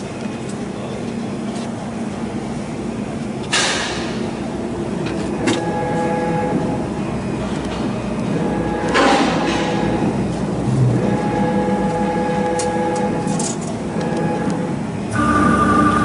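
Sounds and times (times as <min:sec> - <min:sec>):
machine hum: 0:00.0 - 0:16.0
steady motor whine: 0:04.4 - 0:16.0.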